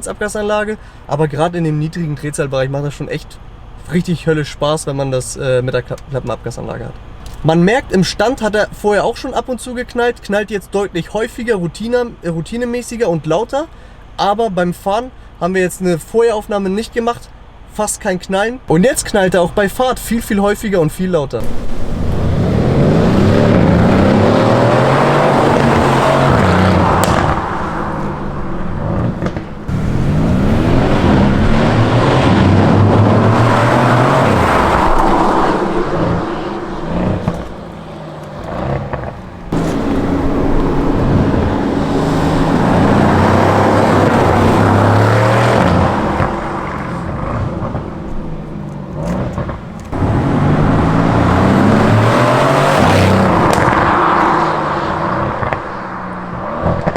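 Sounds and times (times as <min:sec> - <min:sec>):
exhaust pops and crackles: 0:21.4 - 0:44.8, 0:45.6 - 0:50.8, 0:52.8 - 0:54.4, 0:55.2 - 0:56.9
car engine accelerating: 0:21.4 - 0:56.9.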